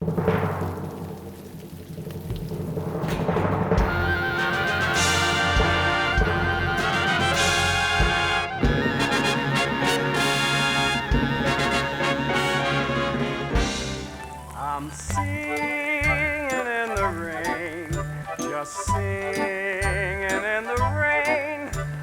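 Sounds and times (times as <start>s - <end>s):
drum hits: 2.6s - 14.4s
brass playing sustained chords: 3.8s - 14.2s.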